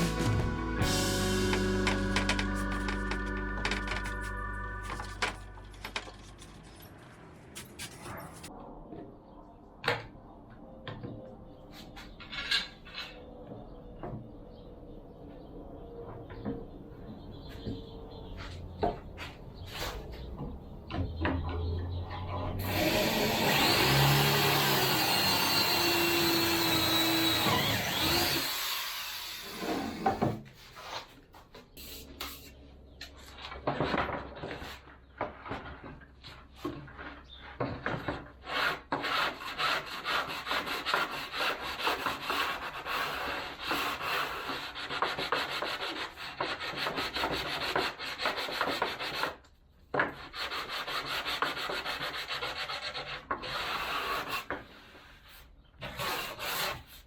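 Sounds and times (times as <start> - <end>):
power tool running: 0.0 - 6.0, 22.6 - 30.4
wood being sanded: 22.6 - 30.0, 38.4 - 49.4, 50.2 - 54.9.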